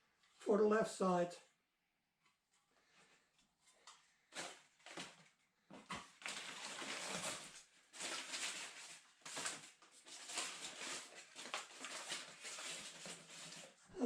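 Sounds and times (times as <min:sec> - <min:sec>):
packaging rustling: 0:03.9 - 0:13.8.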